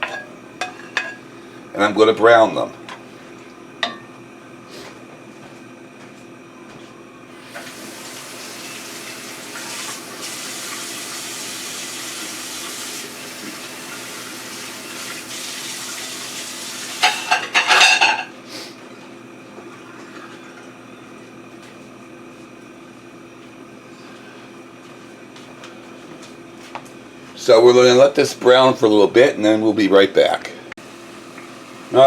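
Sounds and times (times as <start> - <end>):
chicken sizzling in oil: 7.4 - 17.4.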